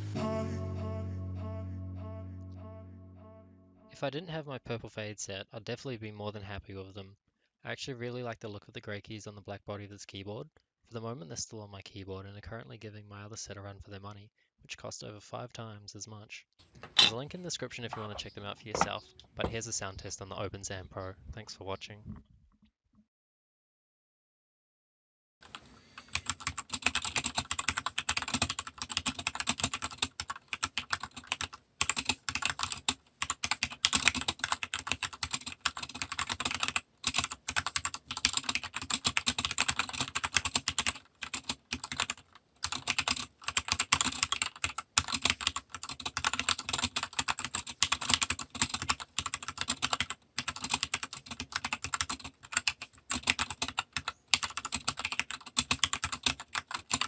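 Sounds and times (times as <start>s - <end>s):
fast typing on mechanical keyboard: 25.5s - 57.0s.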